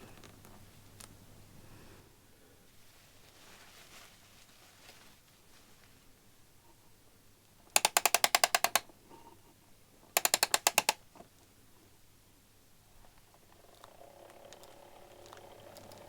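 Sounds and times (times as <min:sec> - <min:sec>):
ratchet clicks of winding key: 0:07.8 - 0:08.8, 0:10.2 - 0:11.0.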